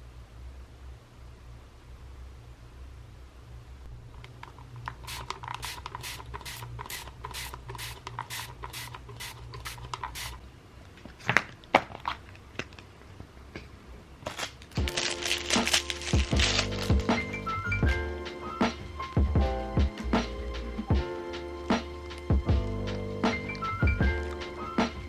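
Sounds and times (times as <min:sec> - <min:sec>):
music: 0:14.8 - 0:25.0.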